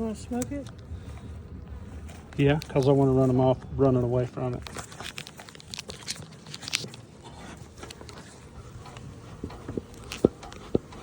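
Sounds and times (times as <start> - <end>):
beehive equipment clicking and tapping: 7.6 - 11.0.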